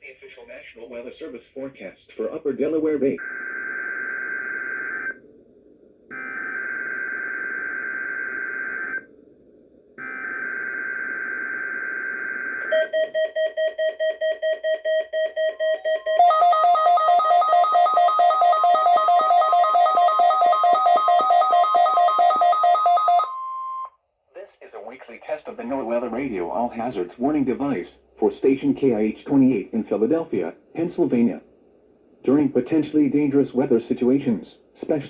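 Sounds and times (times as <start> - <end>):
steady multi-tone alarm: 10.0 - 23.9.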